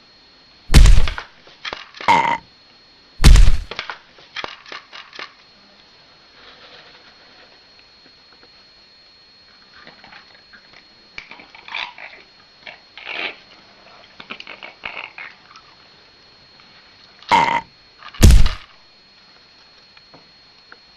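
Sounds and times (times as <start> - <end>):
pets feeding from a plate: 9.7 - 15.9.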